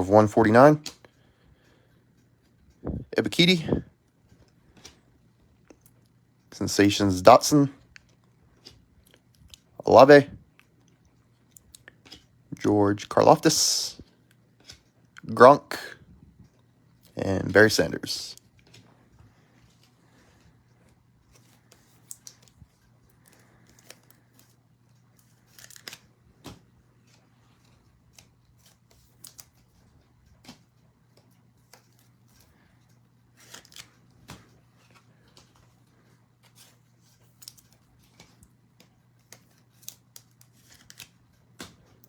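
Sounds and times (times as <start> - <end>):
cards rustling: 0.0 - 42.0
foil wrappers tearing: 25.4 - 26.1, 33.3 - 33.9.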